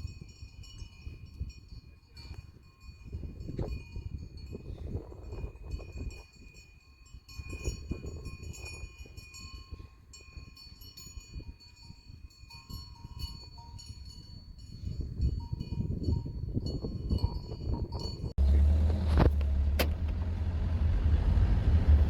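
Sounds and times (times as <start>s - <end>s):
livestock bells clinking: 0.0s - 18.4s
low uneven rumble: 18.4s - 22.0s.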